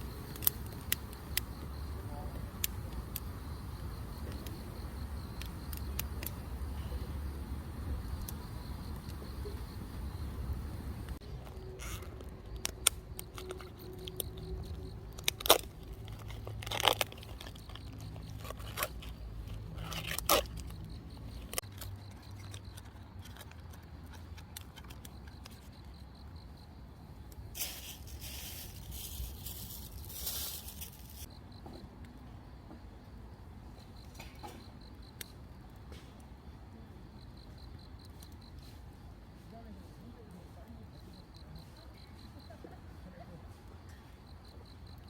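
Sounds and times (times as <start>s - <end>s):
rustling: 27.6s - 31.3s.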